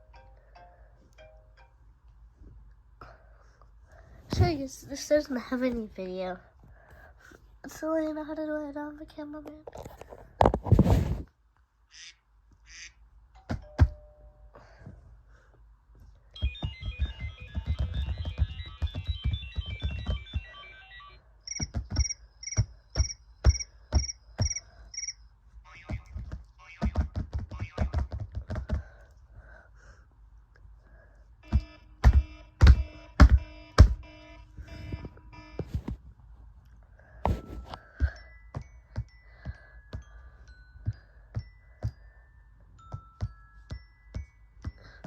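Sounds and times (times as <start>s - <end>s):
phone ringtone melodies: 16.3s - 25.2s, 31.4s - 35.9s, 37.3s - 45.0s
evenly spaced beeps: 16.3s - 25.4s, 31.4s - 35.7s.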